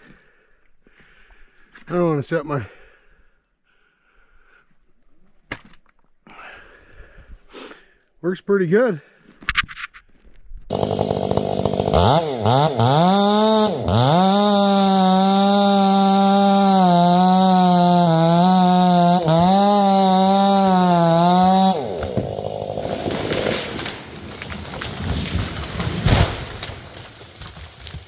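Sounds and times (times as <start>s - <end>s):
chainsaw cutting wood: 10.7s - 28.0s.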